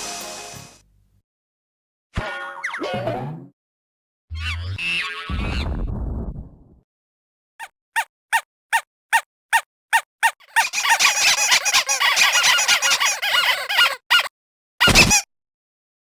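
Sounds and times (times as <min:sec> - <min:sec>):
high squeaky bird-like calls: 0:04.3 - 0:05.6, 0:07.6 - 0:15.3
squeaky cartoon chirps: 0:04.3 - 0:05.7, 0:07.6 - 0:15.3.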